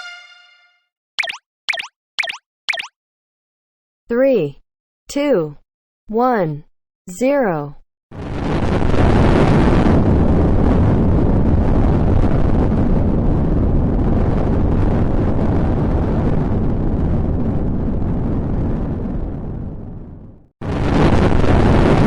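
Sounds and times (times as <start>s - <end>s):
rocket launch rumble: 8.2s - 22.0s.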